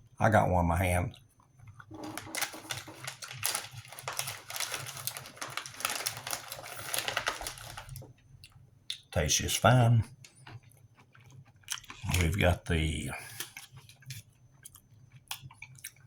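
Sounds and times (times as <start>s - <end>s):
crunchy snack being chewed: 10.2s - 12.4s, 13.2s - 16.0s.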